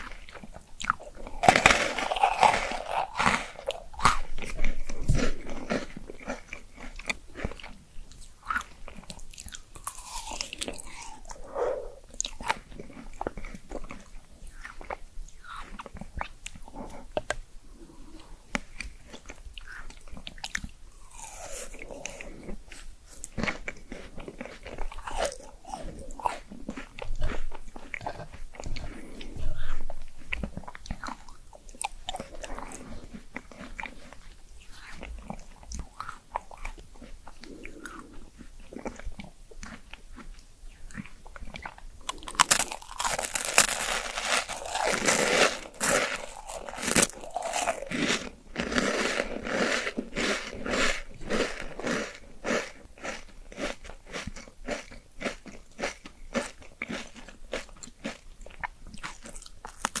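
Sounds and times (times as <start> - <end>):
soft chewing: 0.0 - 60.0
crisp crunching bites: 0.8 - 7.5, 9.4 - 11.4, 42.0 - 58.2, 59.0 - 60.0.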